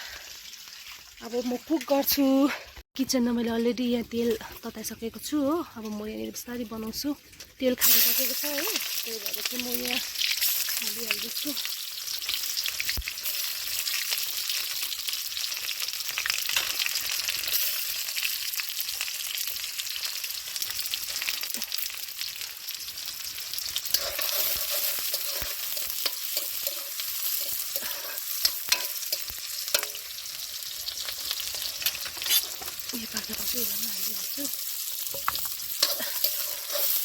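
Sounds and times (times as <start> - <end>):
vegetables sizzling in oil: 0.0 - 37.0
spoon clicking against pan: 25.1 - 30.0.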